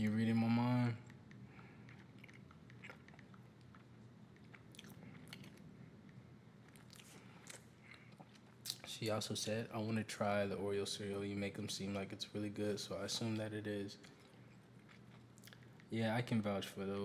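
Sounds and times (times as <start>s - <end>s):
gum chewing mouth clicks: 1.0s - 8.9s, 14.0s - 15.9s.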